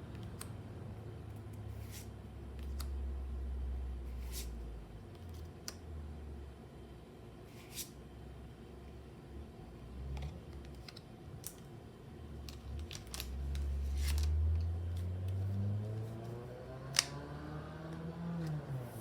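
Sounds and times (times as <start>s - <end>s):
cards and packaging crinkling: 12.5s - 16.0s.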